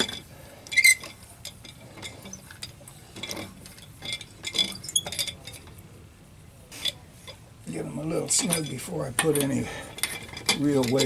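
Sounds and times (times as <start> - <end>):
wrench clinking on lug nuts: 0.0 - 5.8, 8.0 - 11.0.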